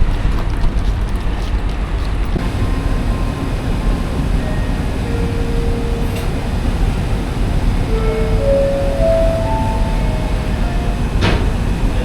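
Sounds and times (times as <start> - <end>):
faint held tones: 2.4 - 12.0
vehicle rumble: 2.4 - 12.0.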